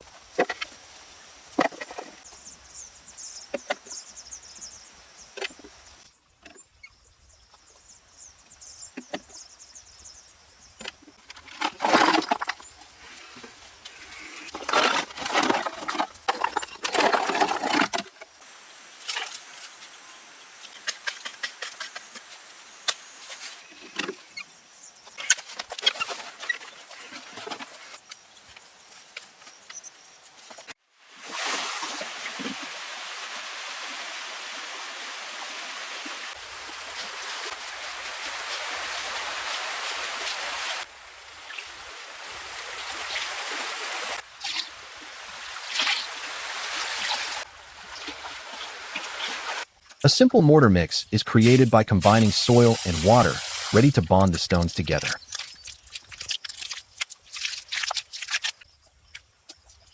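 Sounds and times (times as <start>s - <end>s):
high insect buzz: 0.0s - 6.1s, 18.3s - 30.5s.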